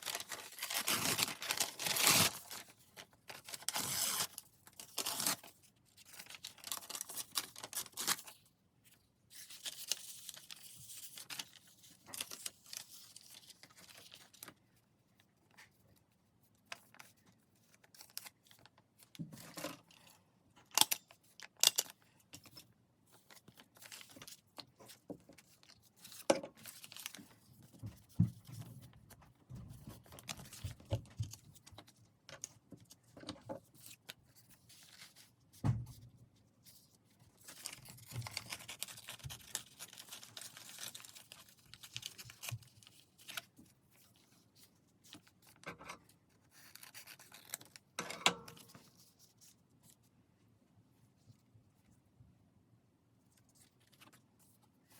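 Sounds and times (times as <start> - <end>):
paper tearing and rustling: 0.0 - 8.4, 9.3 - 14.5, 37.3 - 43.4.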